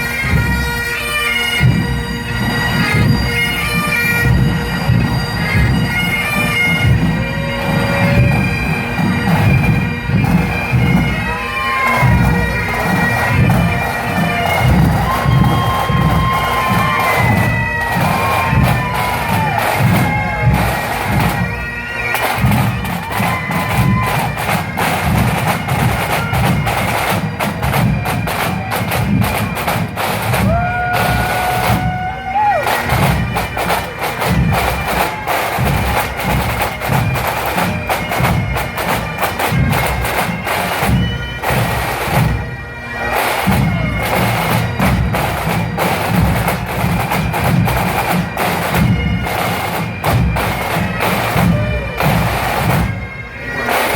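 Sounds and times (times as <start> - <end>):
bagpipes playing: 0.0 - 53.9
snare and bass drums: 12.0 - 21.6, 22.2 - 42.4, 43.4 - 53.0.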